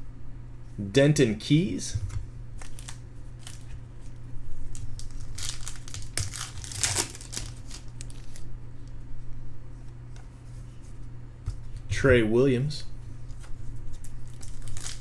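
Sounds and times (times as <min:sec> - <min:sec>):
steady low hum: 0:00.0 - 0:15.0
wrapper crinkling and rustling: 0:02.6 - 0:08.5, 0:13.8 - 0:15.0.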